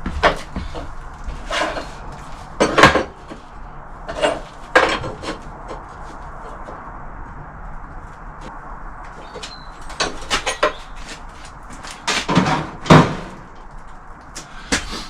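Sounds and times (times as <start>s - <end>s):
knocks and clanks of steel: 0.0s - 3.5s, 4.1s - 5.9s, 9.1s - 14.0s
steady background noise: 0.0s - 15.0s.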